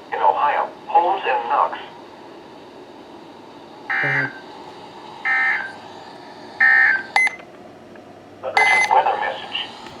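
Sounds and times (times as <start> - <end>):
faint radio static: 0.1 - 2.0, 3.9 - 4.5, 8.4 - 10.0.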